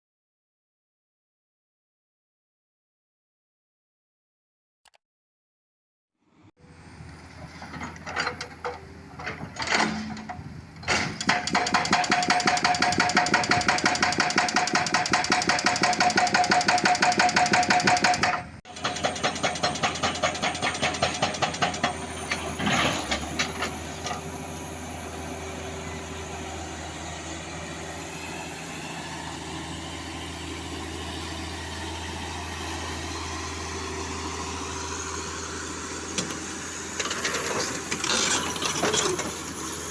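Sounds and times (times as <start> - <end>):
excavator diesel engine running: 6.6 - 39.9
hydraulic breaker hammering rock: 10.8 - 23.7.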